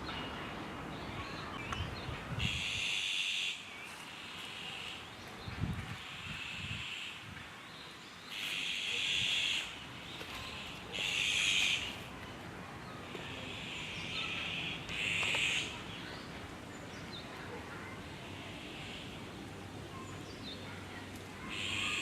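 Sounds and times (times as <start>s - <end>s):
rasping high bird calls: 8.3s - 12.1s, 13.0s - 16.3s, 21.4s - 22.0s.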